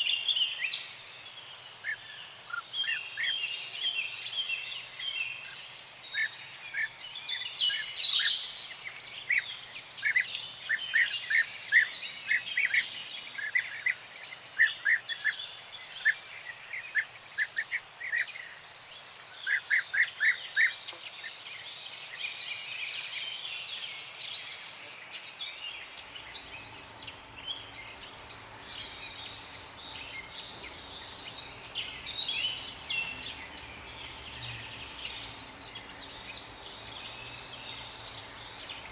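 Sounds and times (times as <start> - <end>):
songbirds chirping: 0.0 - 38.9
faint low hum: 25.8 - 38.9.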